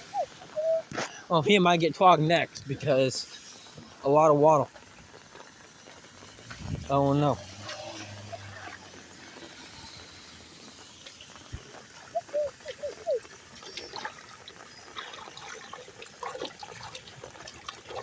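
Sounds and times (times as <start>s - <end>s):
rainwater trickling into drain: 0.0s - 18.0s.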